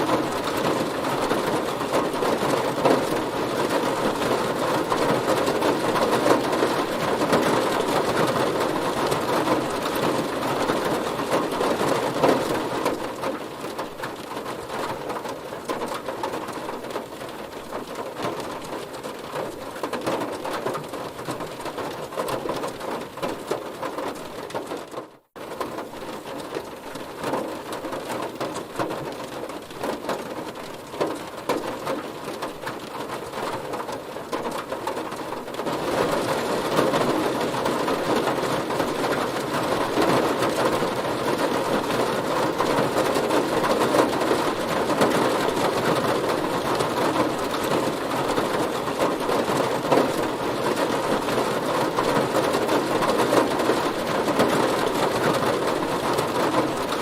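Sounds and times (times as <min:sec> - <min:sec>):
heavy rain on a car: 0:00.0 - 0:57.0.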